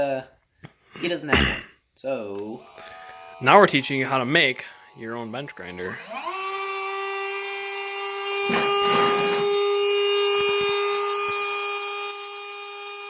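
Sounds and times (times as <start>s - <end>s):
electric drill motor whining: 2.4s - 13.0s
grinding rasp: 2.8s - 13.0s.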